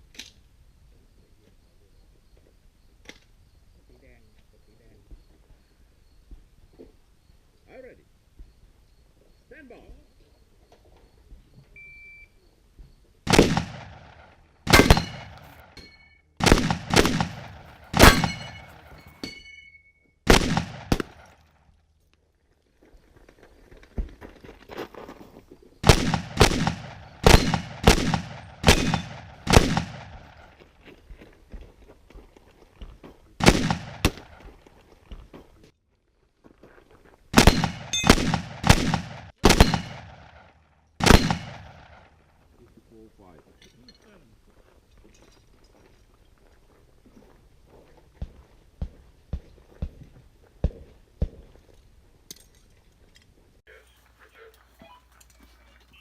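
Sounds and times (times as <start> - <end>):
shotgun shots: 13.3 - 15.7, 16.4 - 19.3, 20.3 - 21.3, 25.8 - 30.5, 33.4 - 34.4, 37.3 - 42.2
steel targets ringing: 14.7 - 16.2, 18.0 - 20.0.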